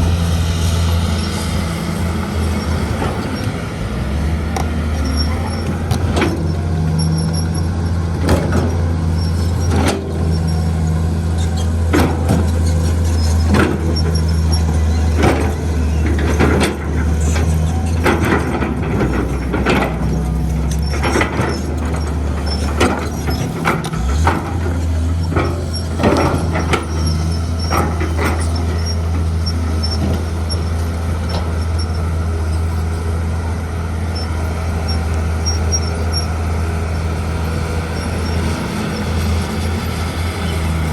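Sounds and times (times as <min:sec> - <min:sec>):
diesel engine running: 0:00.0 - 0:40.9
knocks and clanks: 0:04.5 - 0:07.4, 0:08.1 - 0:08.9, 0:11.7 - 0:31.8.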